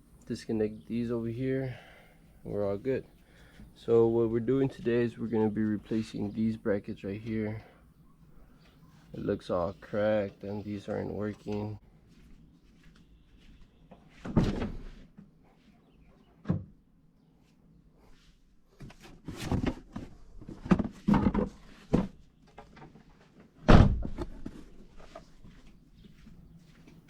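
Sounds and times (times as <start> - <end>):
car parts and tools thudding: 14.2 - 15.0, 19.4 - 22.2, 23.7 - 24.6.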